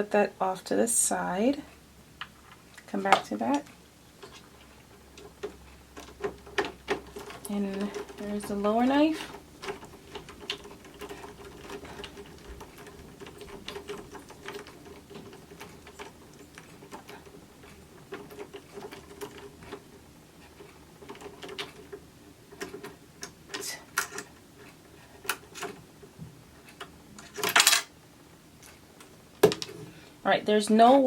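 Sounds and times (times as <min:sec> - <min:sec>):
metal parts clattering: 0:04.2 - 0:25.9, 0:26.6 - 0:27.9.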